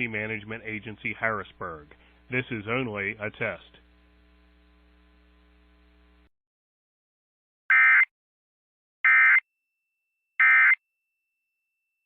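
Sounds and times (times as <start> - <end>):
faint hum: 0.0 - 6.3.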